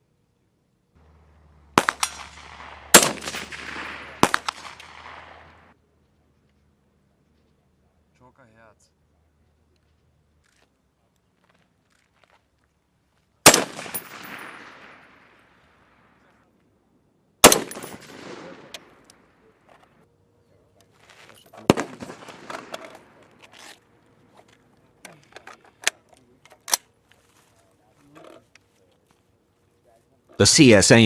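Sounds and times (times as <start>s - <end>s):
rifle shots with echo: 1.7s - 5.7s, 13.4s - 15.5s, 17.4s - 19.2s, 21.6s - 23.4s.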